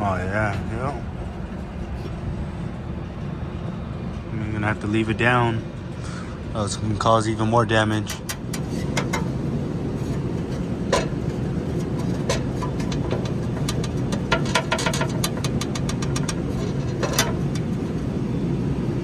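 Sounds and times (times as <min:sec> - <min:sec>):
low mechanical rumble: 0:00.0 - 0:19.0
sharp clicks and knocks: 0:08.0 - 0:18.4.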